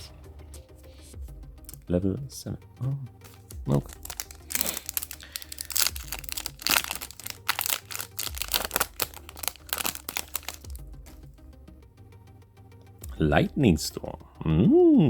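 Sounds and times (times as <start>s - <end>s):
cards and packaging crinkling: 3.2s - 11.4s.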